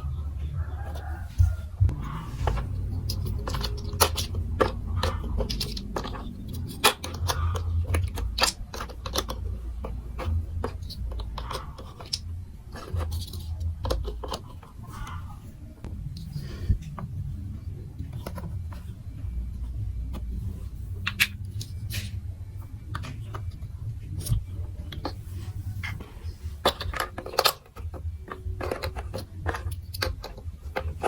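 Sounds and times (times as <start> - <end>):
low steady hum: 0.0 - 31.0
plastic blocks clicking: 2.4 - 15.4, 18.0 - 19.0, 21.0 - 22.2, 22.8 - 31.0.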